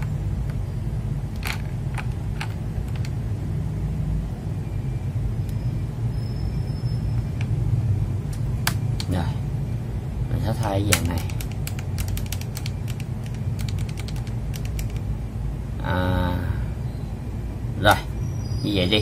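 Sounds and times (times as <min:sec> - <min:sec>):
plastic keycaps clicking: 0:01.4 - 0:03.2, 0:10.9 - 0:15.1.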